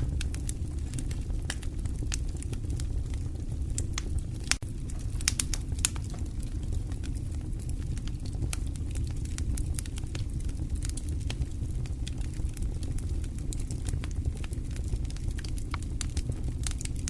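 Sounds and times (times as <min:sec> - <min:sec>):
low rumble: 0:00.0 - 0:13.3
wood fire crackling and popping: 0:00.0 - 0:17.0.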